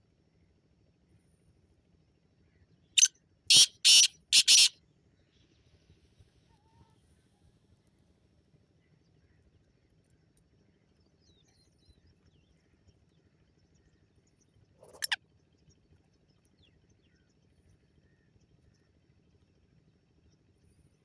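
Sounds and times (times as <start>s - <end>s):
faint small birds chirping: 3.0s - 4.7s, 14.3s - 15.2s
harsh bird call: 3.5s - 4.7s.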